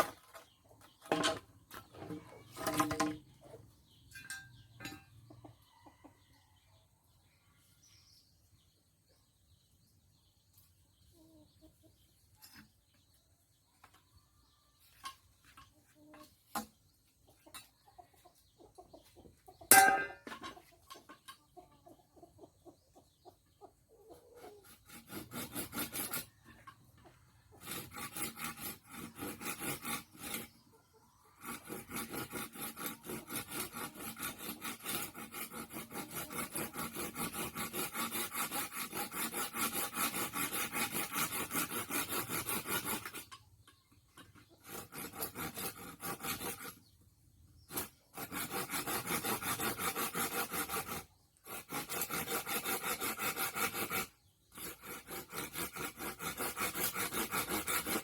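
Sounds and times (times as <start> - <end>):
file rasping on metal: 24.4 - 43.5, 44.1 - 47.0, 47.6 - 58.0.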